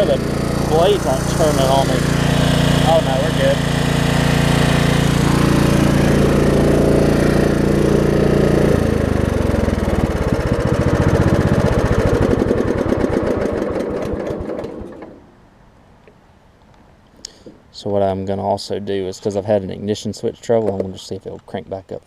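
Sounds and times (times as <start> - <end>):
riding mower engine running: 0.0 - 15.2.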